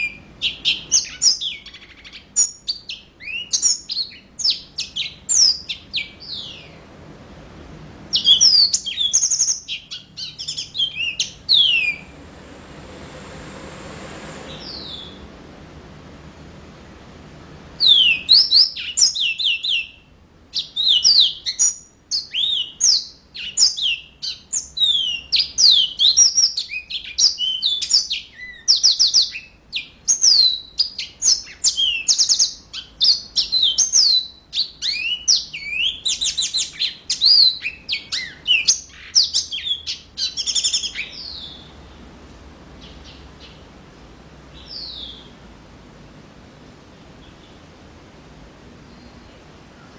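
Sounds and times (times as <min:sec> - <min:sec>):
canary singing rapid trills: 0:00.0 - 0:06.9, 0:08.1 - 0:12.2, 0:14.5 - 0:15.3, 0:17.8 - 0:41.8, 0:44.5 - 0:45.4.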